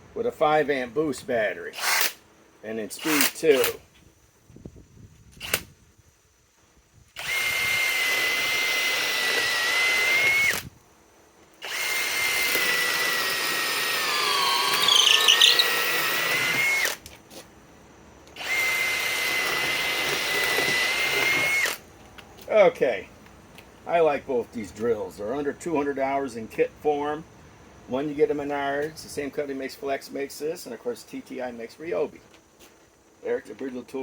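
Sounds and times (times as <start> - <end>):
cordless drill motor whine: 7.2 - 10.8, 11.6 - 17.0, 18.3 - 21.8.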